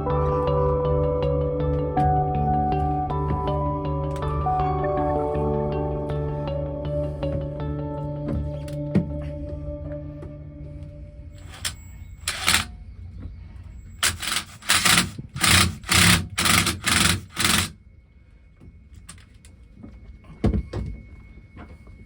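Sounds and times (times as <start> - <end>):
handling noises: 11.4 - 17.7.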